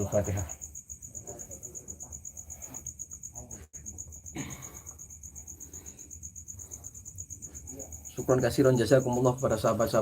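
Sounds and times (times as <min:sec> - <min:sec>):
crickets chirping: 0:00.0 - 0:10.0.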